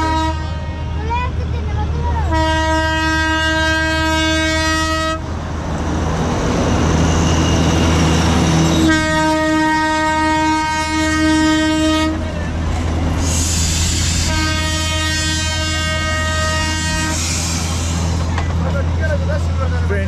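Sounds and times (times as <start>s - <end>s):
train horn blasts: 0.0s - 1.0s, 2.3s - 5.2s, 8.7s - 12.2s, 13.3s - 17.7s
train running rumble: 0.0s - 20.0s.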